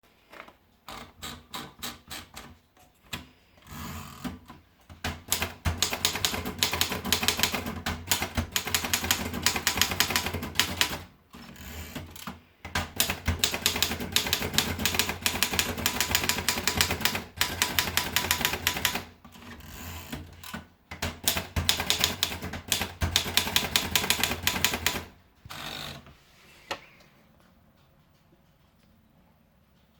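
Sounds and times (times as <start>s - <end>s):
typewriter key strikes: 5.1s - 11.0s, 12.7s - 19.1s, 20.4s - 25.1s.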